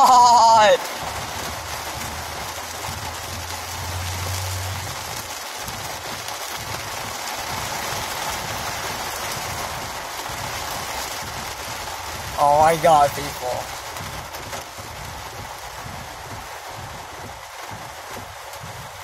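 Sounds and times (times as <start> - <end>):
heavy rain on a car: 0.0 - 19.0
low hum: 0.8 - 5.9.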